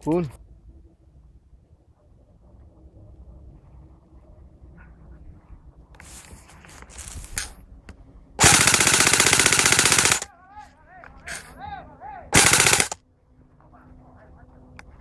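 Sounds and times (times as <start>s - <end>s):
airsoft gun full-auto bursts: 8.4s - 10.3s, 12.4s - 13.0s.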